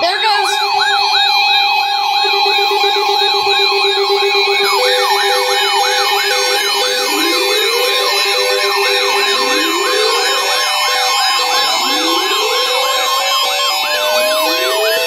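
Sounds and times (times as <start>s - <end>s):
alert tone: 0.0s - 15.0s
fast siren yelp: 0.0s - 15.0s
rising siren wail: 0.0s - 15.0s.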